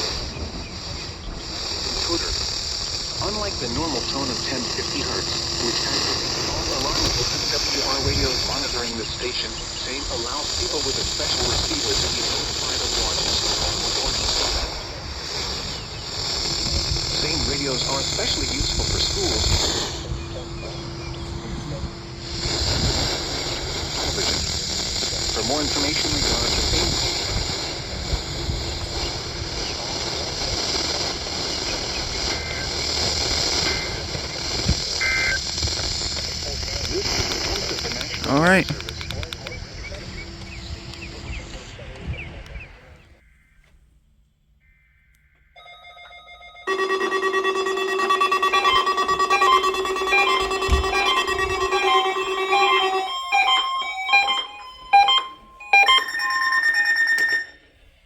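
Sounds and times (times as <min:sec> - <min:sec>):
low buzzing tone: 0:00.0 - 0:42.9, 0:45.0 - 0:58.0
radio static hiss: 0:00.0 - 0:43.2, 0:46.7 - 0:53.6
steady high tone: 0:01.1 - 0:28.9, 0:36.4 - 0:42.1, 0:45.6 - 0:57.8
faint short tones: 0:44.6 - 0:58.0
two-tone beep: 0:45.6 - 0:57.7.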